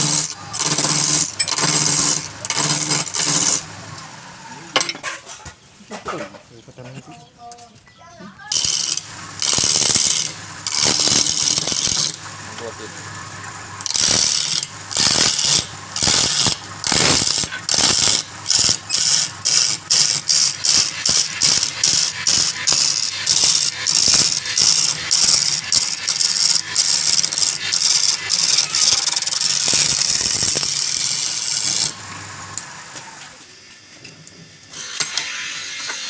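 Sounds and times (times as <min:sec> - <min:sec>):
lathe tool cutting wood: 0:00.0 - 0:04.5, 0:08.5 - 0:33.4
lathe motor low hum: 0:08.6 - 0:33.4.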